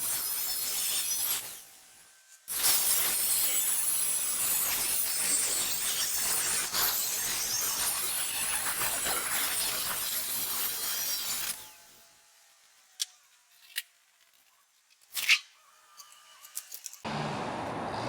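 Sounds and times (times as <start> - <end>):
power tool cutting steel: 0.0 - 14.0.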